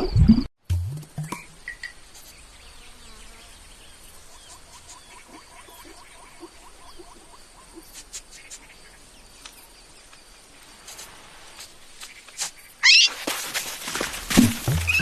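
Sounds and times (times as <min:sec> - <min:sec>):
high-pitched animal cry: 0:12.8 - 0:13.2
rustling and knocking: 0:13.2 - 0:15.0.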